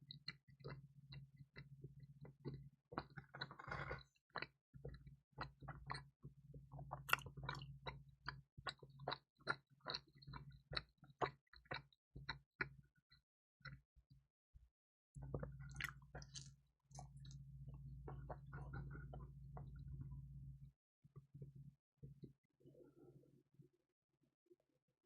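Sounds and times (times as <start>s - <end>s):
chewing crispy pizza: 0.0s - 13.8s, 15.2s - 20.1s.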